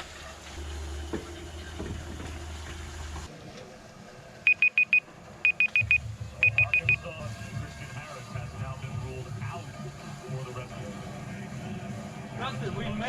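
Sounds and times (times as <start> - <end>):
low steady drone: 0.4 - 13.0
high electronic beeper: 4.5 - 7.0.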